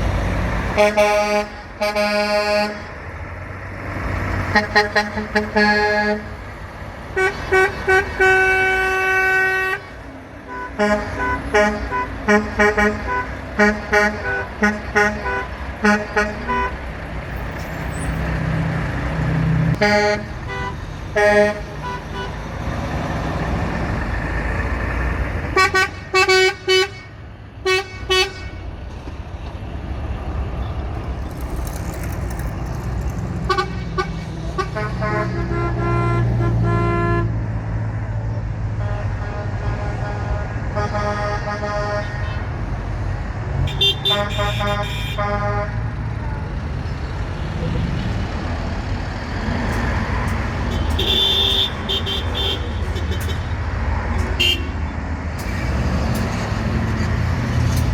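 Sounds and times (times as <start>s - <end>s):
truck engines rumbling: 0.0s - 57.9s
truck air horns blasting: 0.7s - 3.0s, 4.4s - 6.4s, 7.1s - 16.9s, 19.8s - 22.4s, 25.5s - 28.7s, 33.4s - 37.6s, 38.7s - 42.7s, 43.6s - 46.0s, 49.7s - 53.6s, 54.2s - 54.8s.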